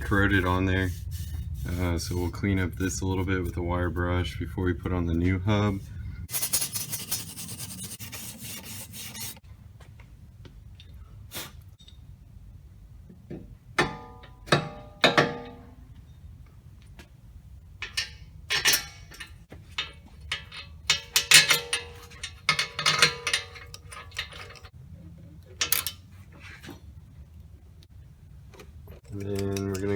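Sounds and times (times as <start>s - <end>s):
wire brush scratching rust: 5.6s - 9.4s, 17.8s - 24.8s
metal tools clanking: 17.8s - 24.8s, 25.6s - 26.2s.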